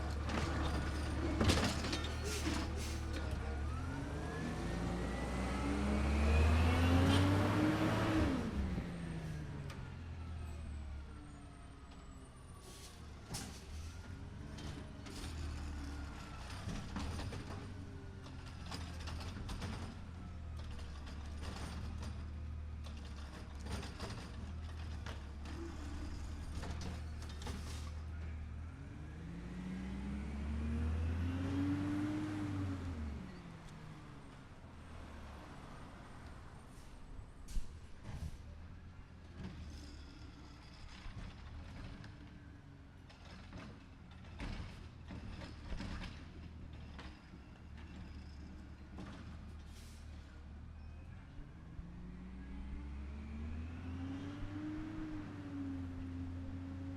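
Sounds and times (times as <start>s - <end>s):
garbage truck engine revving: 0.0s - 9.4s.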